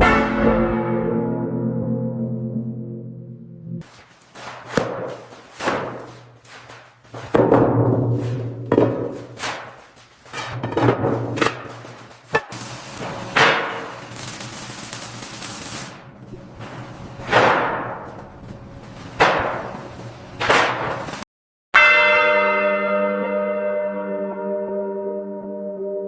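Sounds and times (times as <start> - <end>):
large church bell ringing: 0.0 - 3.8, 21.8 - 26.0
sudden hits with swish: 0.0 - 3.8.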